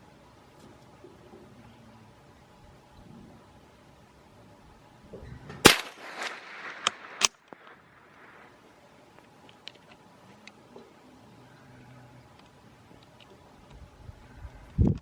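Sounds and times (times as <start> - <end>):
rifle shot: 5.6 - 8.6
sharp small cracks: 5.6 - 10.6.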